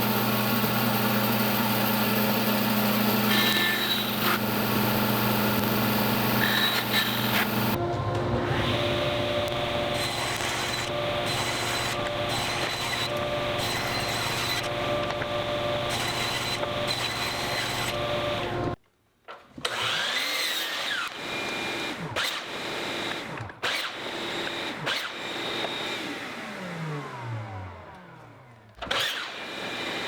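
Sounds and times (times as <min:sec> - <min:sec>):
steady machine noise: 0:00.0 - 0:07.8
power tool rising and falling pitch: 0:00.0 - 0:18.8, 0:19.6 - 0:30.0.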